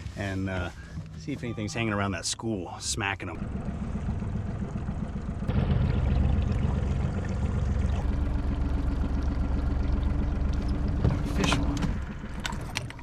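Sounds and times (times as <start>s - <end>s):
boat motor running: 3.1s - 13.0s
steady hum: 3.3s - 13.0s.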